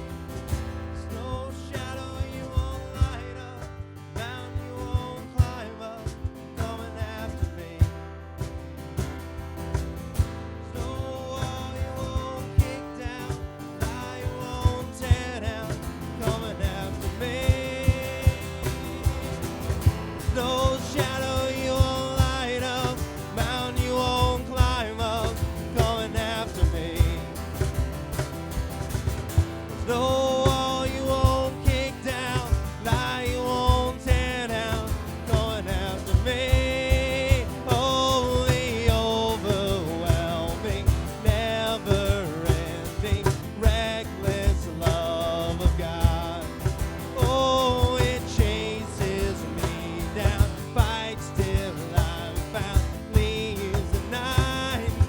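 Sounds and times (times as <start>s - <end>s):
acoustic guitar: 0.0s - 55.0s
cajon beat: 0.0s - 55.0s
person singing: 10.8s - 27.7s, 29.8s - 55.0s.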